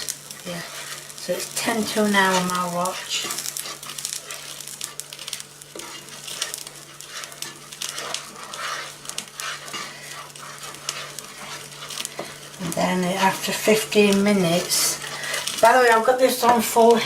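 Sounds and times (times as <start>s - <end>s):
light sizzle: 0.0s - 17.0s
steady low hum: 0.0s - 17.0s
spoon scraping a saucepan: 5.7s - 12.6s.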